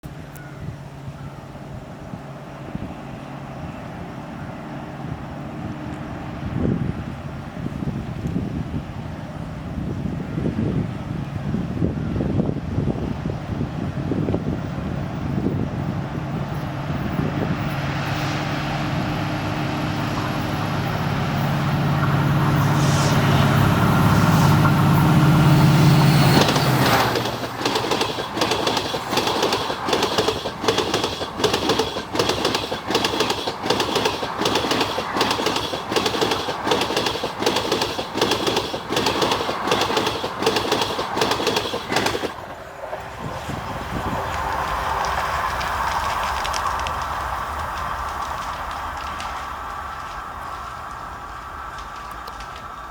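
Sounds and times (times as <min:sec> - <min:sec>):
diesel locomotive engine passing: 0:00.8 - 0:52.9
train wheels clanging over rail joints: 0:24.4 - 0:43.4.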